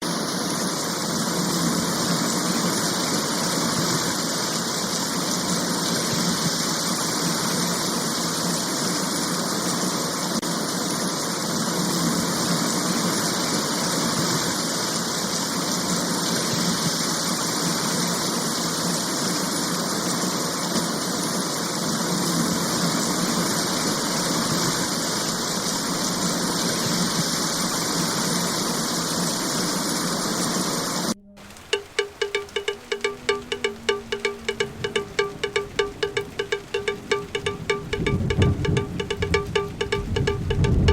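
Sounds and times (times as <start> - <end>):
heavy rain hissing: 0.0 - 31.8.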